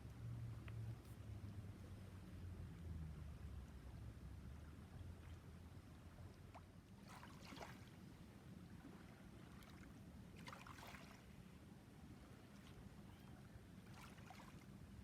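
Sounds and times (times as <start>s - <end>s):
faint water splashing: 5.1s - 11.6s, 12.2s - 15.0s.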